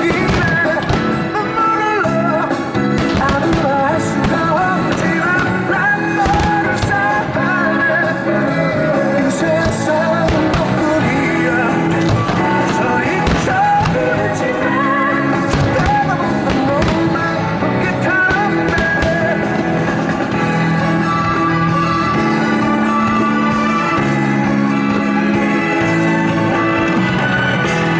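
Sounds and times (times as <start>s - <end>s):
sharp cracks: 0.0s - 20.5s
song with singing voice: 0.0s - 27.9s.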